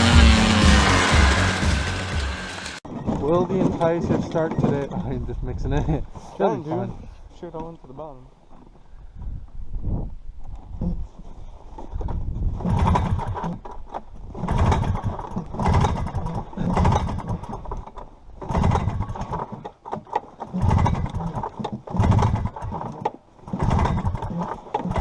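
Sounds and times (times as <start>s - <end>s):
snowmobile engine pull-start cranking: 0.0s - 2.8s.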